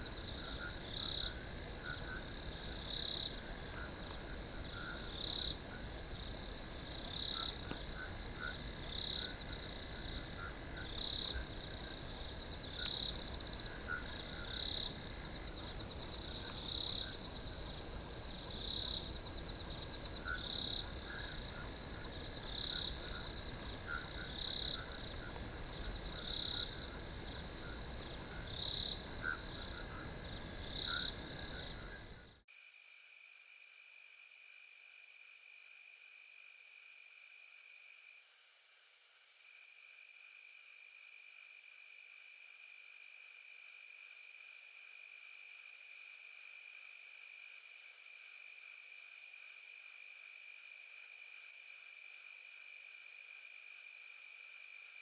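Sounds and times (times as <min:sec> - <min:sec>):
crickets trilling: 0:00.0 - 0:32.4
loud cricket chirp: 0:00.0 - 0:55.0.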